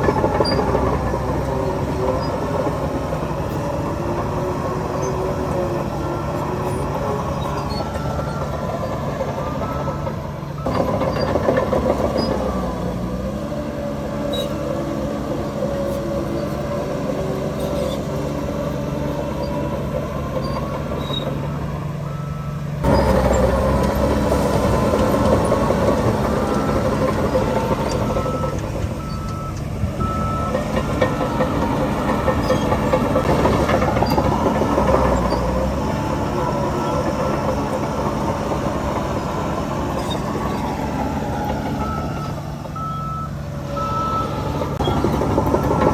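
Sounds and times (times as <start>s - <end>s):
diesel machinery engines: 0.0s - 45.9s
reversing beeper: 5.0s - 11.5s, 21.5s - 32.8s, 40.0s - 45.9s.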